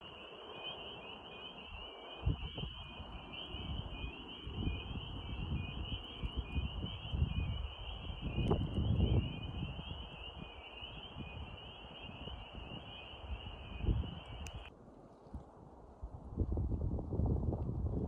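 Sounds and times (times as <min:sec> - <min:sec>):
high-pitched peeping calls: 0:00.0 - 0:14.7
wind rumble on microphone: 0:00.9 - 0:18.0.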